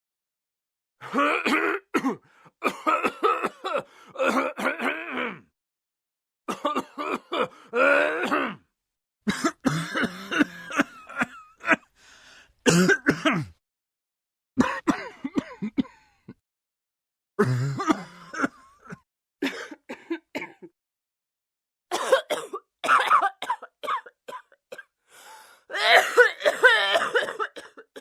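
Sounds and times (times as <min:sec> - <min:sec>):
person coughing and clearing throat: 0:01.0 - 0:05.5, 0:06.5 - 0:11.9, 0:12.7 - 0:13.6, 0:14.6 - 0:16.4, 0:17.4 - 0:20.8, 0:21.9 - 0:24.9, 0:25.7 - 0:28.0.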